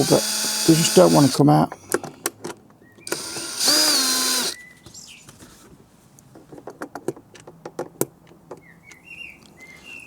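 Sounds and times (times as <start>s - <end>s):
power screwdriver whine: 0.0s - 1.4s, 3.1s - 4.6s.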